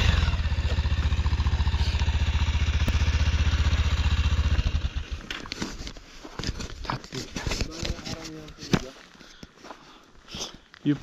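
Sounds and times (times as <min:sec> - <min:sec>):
motorcycle engine idling: 0:00.0 - 0:05.3.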